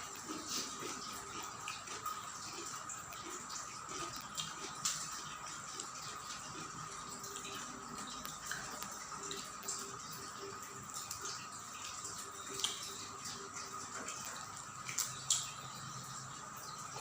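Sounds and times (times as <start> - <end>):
chewing: 0.0 - 15.8
wet clicks and smacks: 3.9 - 6.0, 14.8 - 15.6.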